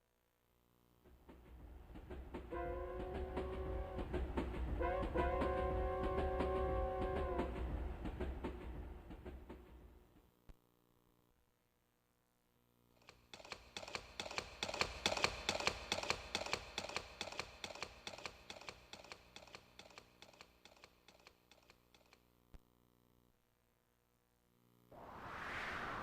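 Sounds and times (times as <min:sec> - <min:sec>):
rapid sharp clicks like typing: 0:13.0 - 0:22.3.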